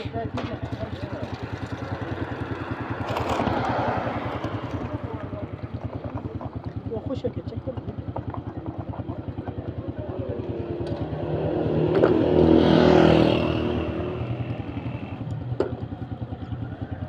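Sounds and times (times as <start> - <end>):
engine chugging: 0.0 - 17.0
motor vehicle passing: 0.9 - 7.3, 8.0 - 15.4.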